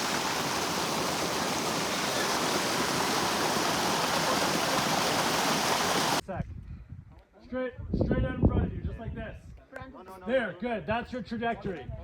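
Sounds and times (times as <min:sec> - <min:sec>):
stream water rushing: 0:00.0 - 0:06.2.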